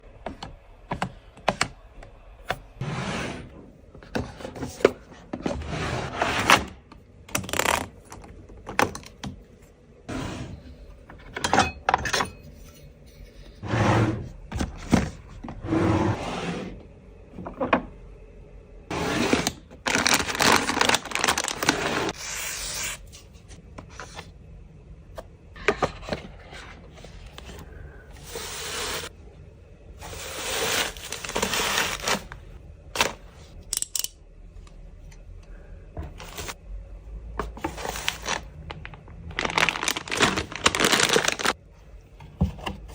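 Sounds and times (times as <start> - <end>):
packaging scraping and rustling: 18.9 - 23.0, 30.0 - 33.2, 37.6 - 41.6.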